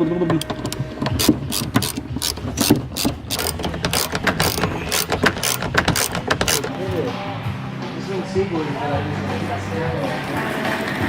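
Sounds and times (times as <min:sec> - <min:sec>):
socket wrench ratchet clicking: 0:00.4 - 0:06.7.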